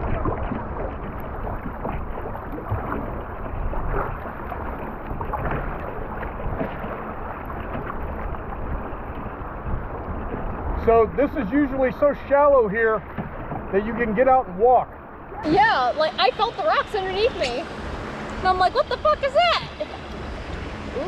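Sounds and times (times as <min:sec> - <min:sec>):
small splashes: 0:00.0 - 0:21.0
river water rushing: 0:15.1 - 0:21.0.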